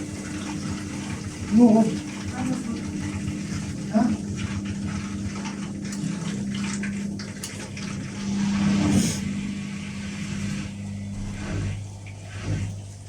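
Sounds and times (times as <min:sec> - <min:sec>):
washing machine motor hum: 0:00.0 - 0:13.0
water rushing and splashing: 0:05.6 - 0:13.0.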